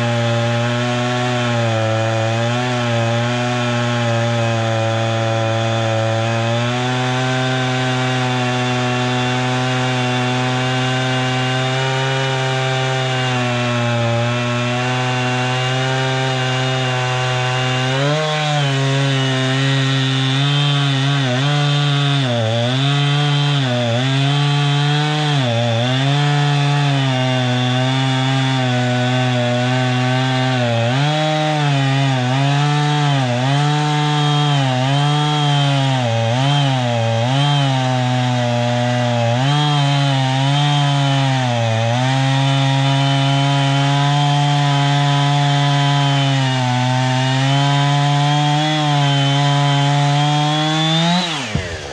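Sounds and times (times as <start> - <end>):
bandsaw mill sawing log: 0.0 - 51.9
gas engine running at high speed: 51.3 - 51.9.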